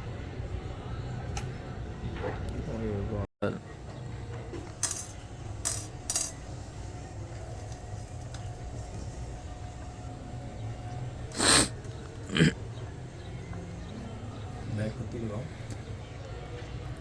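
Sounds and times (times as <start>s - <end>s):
metallic clinks and rattles: 4.7s - 6.5s.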